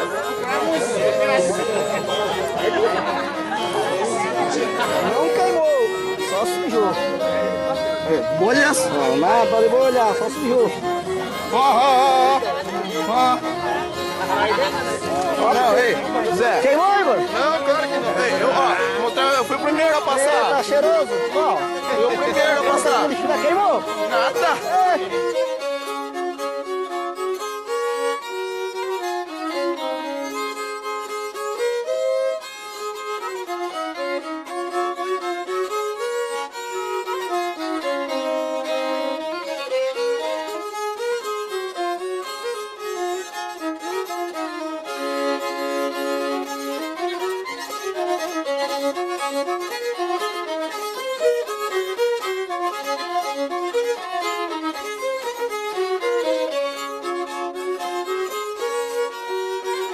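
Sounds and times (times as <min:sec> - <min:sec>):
fiddle melody: 0:00.0 - 0:59.9.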